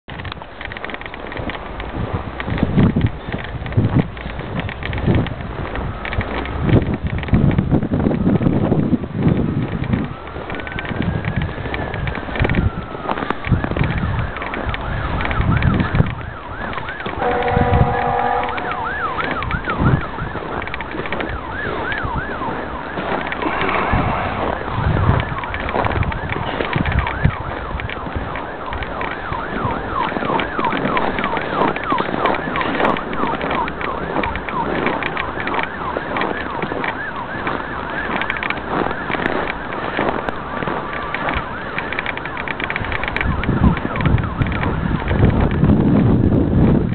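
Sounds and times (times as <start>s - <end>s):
wind-like noise: 0.0s - 46.9s
siren yelping: 10.0s - 45.7s
horn blast: 17.2s - 19.4s.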